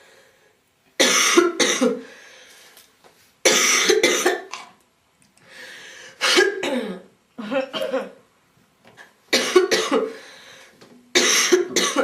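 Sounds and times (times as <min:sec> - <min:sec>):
girl coughing: 0:01.0 - 0:02.0, 0:03.5 - 0:04.5, 0:06.2 - 0:08.2, 0:09.3 - 0:10.2, 0:11.2 - 0:12.0.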